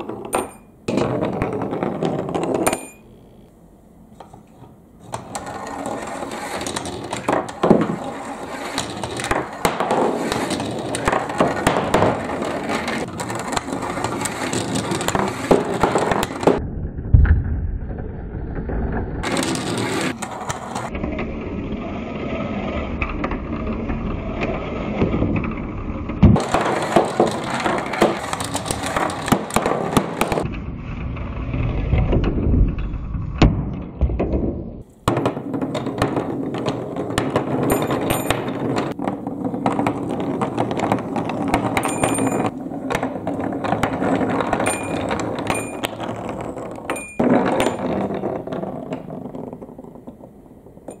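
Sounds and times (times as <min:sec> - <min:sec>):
balls clacking against wood: 0:00.0 - 0:03.0, 0:04.2 - 0:16.6, 0:26.3 - 0:30.5, 0:33.4 - 0:51.0
balls rolling on wooden track: 0:00.0 - 0:03.4, 0:04.2 - 0:51.0.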